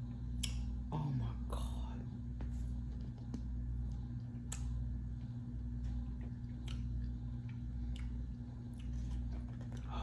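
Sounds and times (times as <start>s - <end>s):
low steady hum: 0.0s - 10.0s
wet mouth and spoon clicks: 0.4s - 0.7s, 4.4s - 4.8s.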